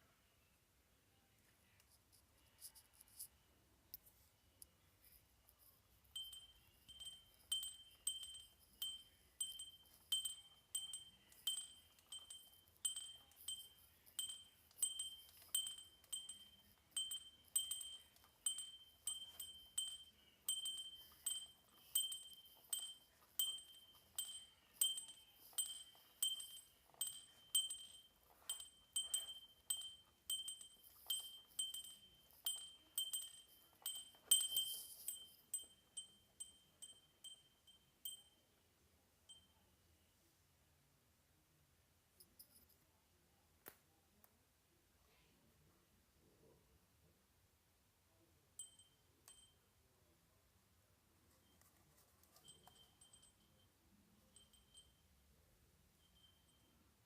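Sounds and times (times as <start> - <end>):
handheld bell ringing: 6.1 - 38.5, 48.6 - 49.6, 51.4 - 55.2, 56.0 - 57.0.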